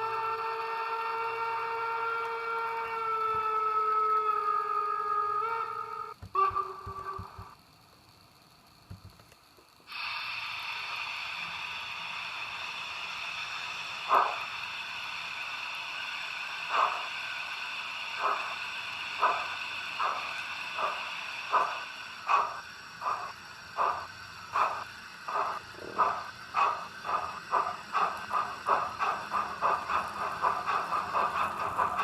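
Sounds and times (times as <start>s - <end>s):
steam hiss from small speaker: 8.2s - 32.0s
steam exhaust chuffs: 9.9s - 32.0s.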